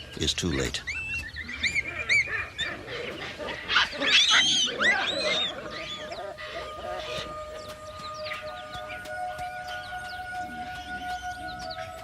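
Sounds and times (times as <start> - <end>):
baboons screaming: 0.9 - 12.0
musical drone: 5.2 - 12.0.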